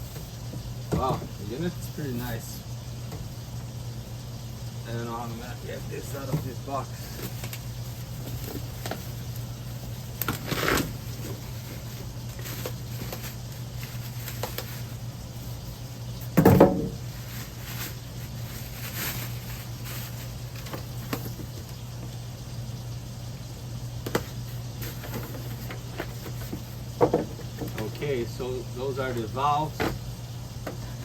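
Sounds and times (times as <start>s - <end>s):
cardboard packaging scraping and rustling: 6.3s - 21.8s, 24.1s - 28.1s.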